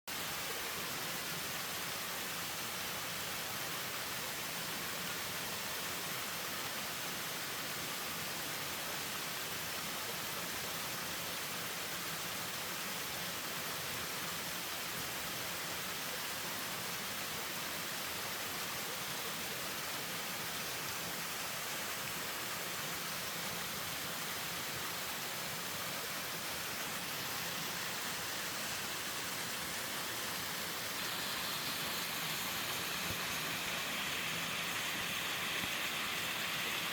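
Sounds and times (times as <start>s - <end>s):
waterfall rushing: 15.6s - 36.9s.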